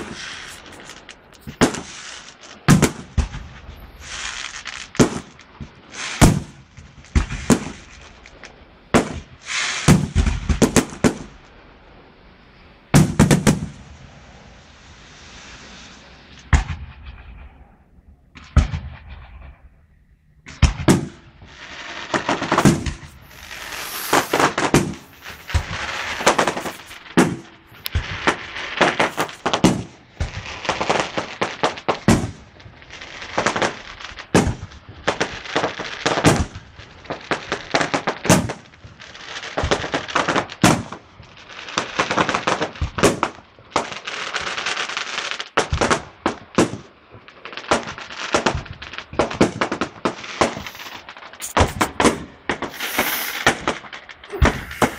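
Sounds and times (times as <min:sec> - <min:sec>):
firework shell bursts: 0:00.0 - 0:06.4, 0:22.1 - 0:30.3, 0:50.3 - 0:54.9
firework crackling: 0:00.0 - 0:54.9.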